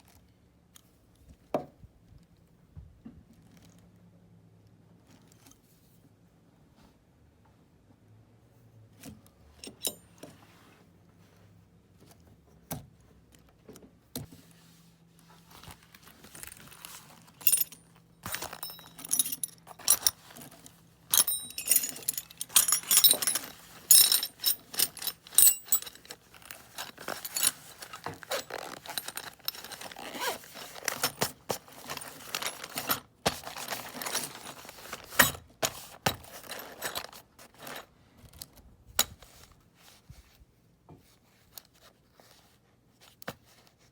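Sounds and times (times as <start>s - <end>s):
metal hand tools clinking: 17.4s - 31.2s.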